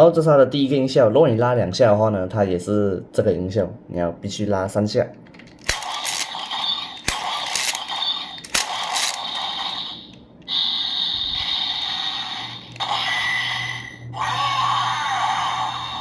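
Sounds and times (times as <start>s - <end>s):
electronic toy sound effect: 5.8s - 16.0s.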